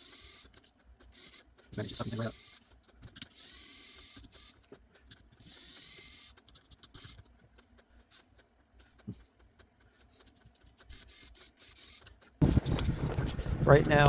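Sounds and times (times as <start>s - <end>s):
motorised screwdriver whirring: 0.0s - 7.3s, 10.8s - 13.5s.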